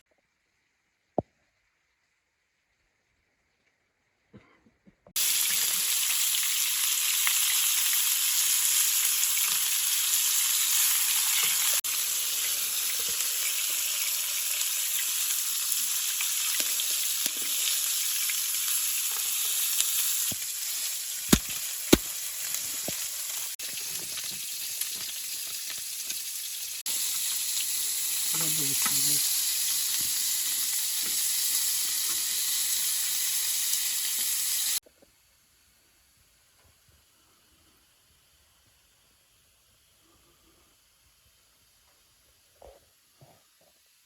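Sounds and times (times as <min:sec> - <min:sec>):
food sizzling in a frying pan: 0:05.2 - 0:34.8.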